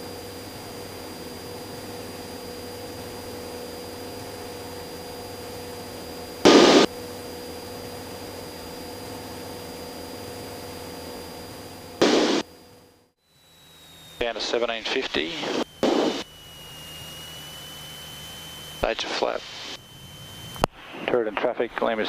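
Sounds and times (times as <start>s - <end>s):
airplane engine and propeller droning: 0.0s - 22.0s
radio static hiss: 6.5s - 6.9s, 12.0s - 12.4s, 13.8s - 22.0s.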